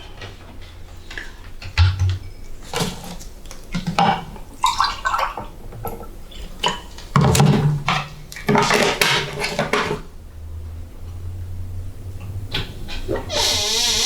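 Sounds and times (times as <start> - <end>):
dishes and pans clattering: 0.0 - 10.2.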